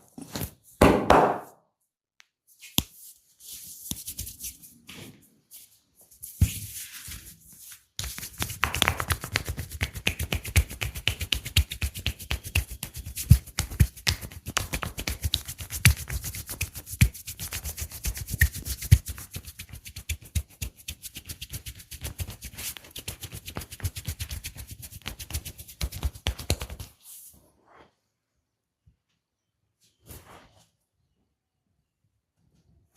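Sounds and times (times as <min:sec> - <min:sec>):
hands rubbing and tapping: 0:02.2 - 0:04.6, 0:08.0 - 0:27.0.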